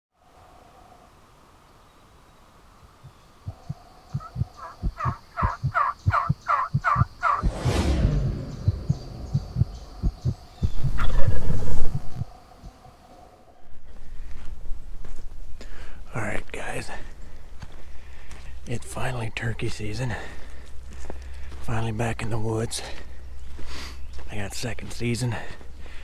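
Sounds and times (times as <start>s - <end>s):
turkey gobble falling in pitch: 4.2s - 7.4s
turkey yelping: 4.2s - 7.4s
loud rushing burst: 7.3s - 10.9s
low thumps: 7.3s - 11.1s.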